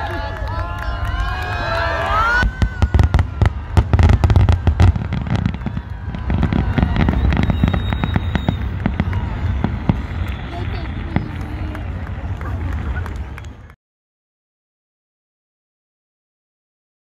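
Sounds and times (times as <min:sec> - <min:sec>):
low fireworks rumble: 0:00.0 - 0:13.8
fireworks cracks and bangs: 0:00.2 - 0:13.5.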